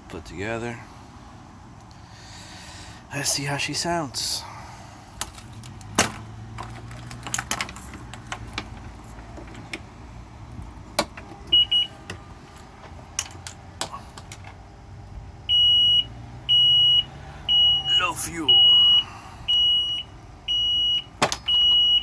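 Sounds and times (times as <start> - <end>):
loud high beeps: 15.5 - 22.0
short electronic beep: 15.5 - 22.0.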